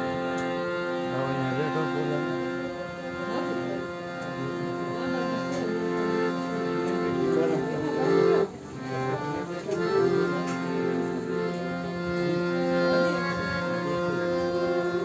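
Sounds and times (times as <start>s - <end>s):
reed organ drone and melody: 0.0s - 15.0s.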